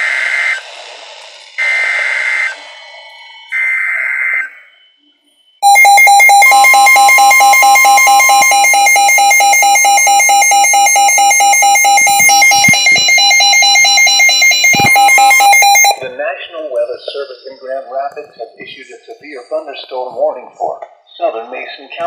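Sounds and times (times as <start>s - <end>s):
burst of alert data: 5.6s - 16.0s
weather radio alert alarm: 5.6s - 16.0s.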